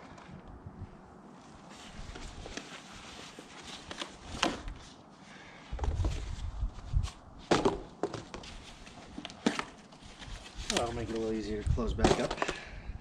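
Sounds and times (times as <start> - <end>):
shuffling: 1.3 - 5.0.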